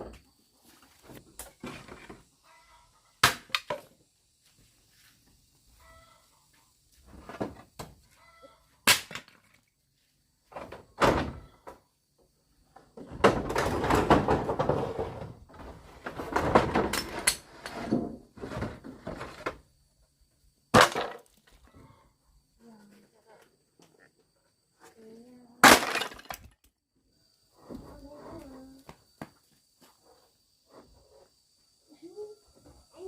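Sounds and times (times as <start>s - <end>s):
rustling and clattering: 12.8s - 19.6s.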